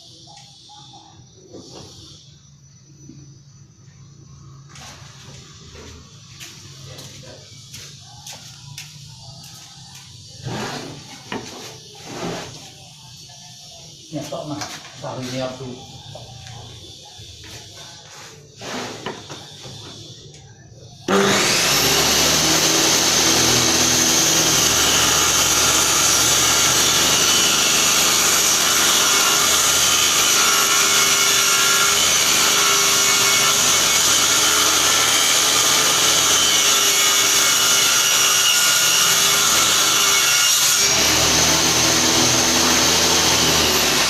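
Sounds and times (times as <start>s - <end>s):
table saw whining: 4.6s - 44.0s
saw blade cutting wood: 10.4s - 12.7s, 17.4s - 20.1s, 21.1s - 44.0s.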